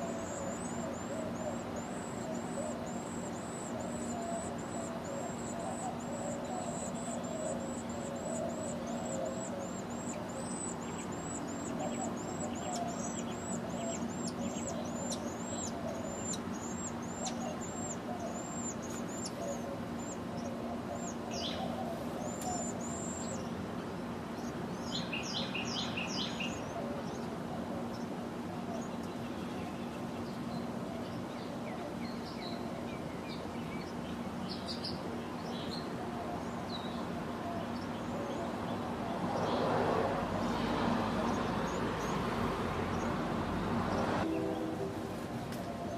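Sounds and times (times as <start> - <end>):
small bird calling: 0.0 - 23.6
low hum and noise: 0.0 - 45.9.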